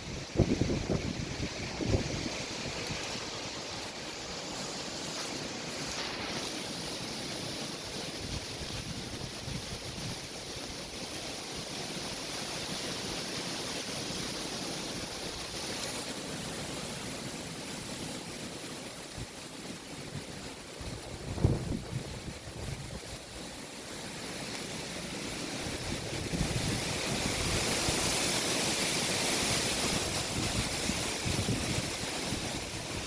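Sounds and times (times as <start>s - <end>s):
strong wind rushing: 0.0s - 3.0s, 20.8s - 23.1s, 25.6s - 28.2s, 29.6s - 33.0s
wind buffeting microphone: 0.0s - 3.3s, 20.0s - 23.5s, 25.2s - 33.0s.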